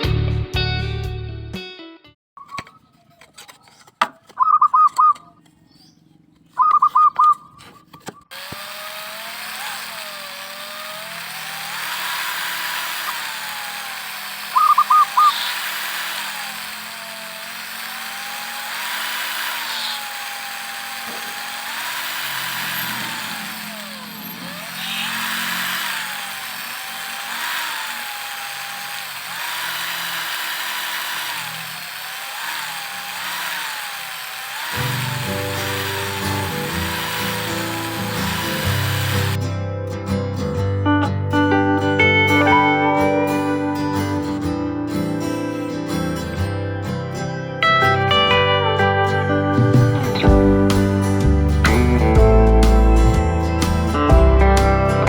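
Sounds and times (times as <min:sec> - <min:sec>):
power drill running: 0:08.3 - 0:39.4.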